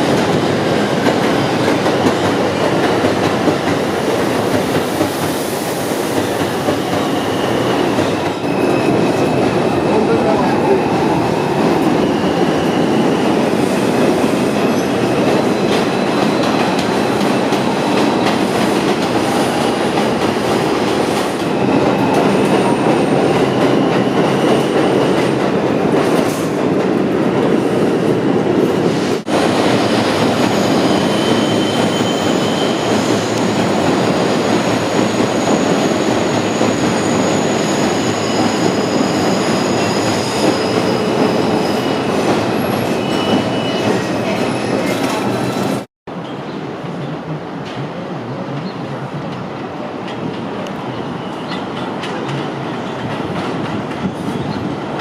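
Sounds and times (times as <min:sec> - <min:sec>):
subway train rumbling on rails: 0:00.0 - 0:55.0
high-pitched wheel squeals: 0:30.5 - 0:33.7, 0:35.2 - 0:45.0.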